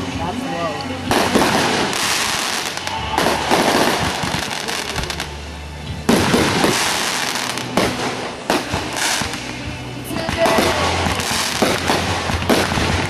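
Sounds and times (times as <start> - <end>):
fireworks bursting and crackling: 0.0 - 13.0
music playing: 0.0 - 13.0.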